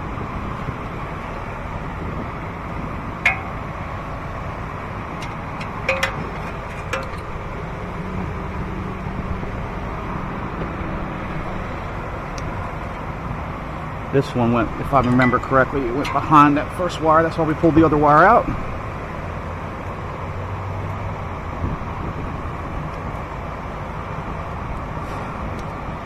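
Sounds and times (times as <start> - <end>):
steady background noise: 0.0 - 26.0.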